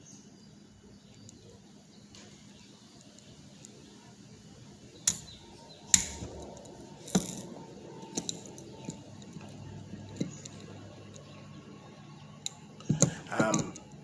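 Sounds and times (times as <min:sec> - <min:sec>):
small metal clicks and clinks: 0:05.1 - 0:11.4.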